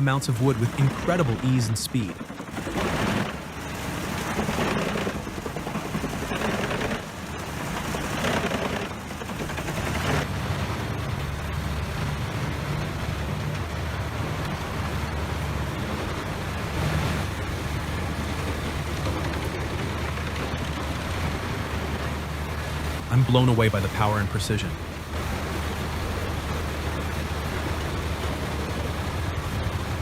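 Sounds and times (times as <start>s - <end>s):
engine low drone: 0.0s - 30.0s
wood chipper grinding: 2.5s - 10.3s.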